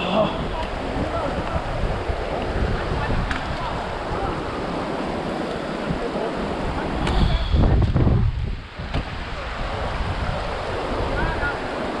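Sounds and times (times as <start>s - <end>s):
stream rushing over rocks: 0.0s - 12.0s
wind buffeting microphone: 0.0s - 12.0s.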